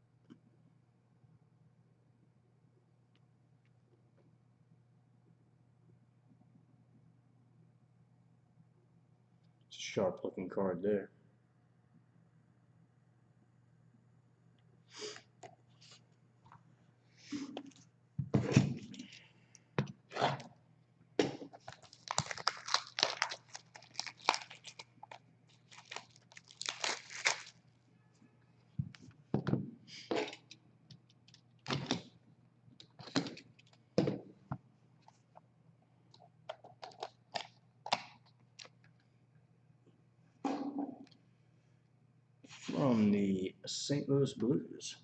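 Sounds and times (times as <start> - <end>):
plastic packaging crinkling: 21.5 - 27.6.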